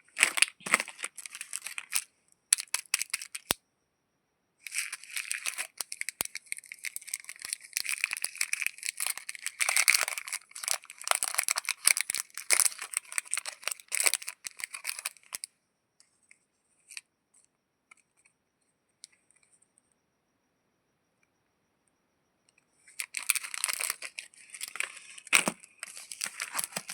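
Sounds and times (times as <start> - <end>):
wrapper tearing and crinkling: 0.2 - 2.0, 2.6 - 3.6, 4.7 - 15.2, 23.0 - 26.9.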